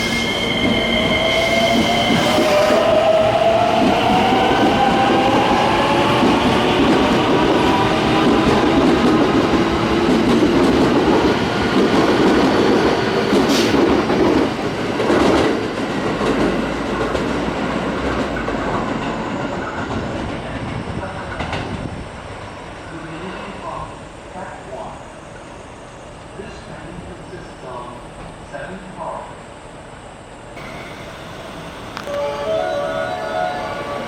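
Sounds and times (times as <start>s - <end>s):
electric train motors whining: 30.6s - 34.0s.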